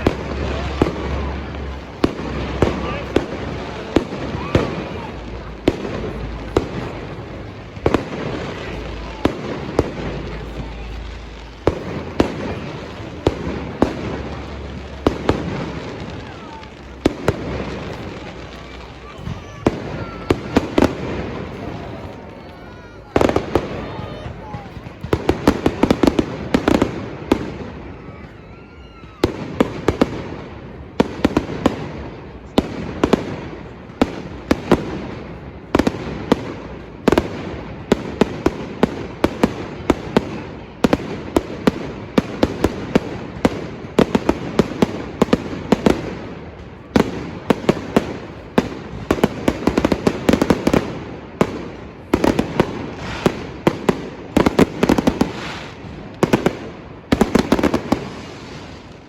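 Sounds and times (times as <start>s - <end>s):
rumbling echo: 0.0s - 28.1s
fireworks bangs and crackles: 0.0s - 59.0s.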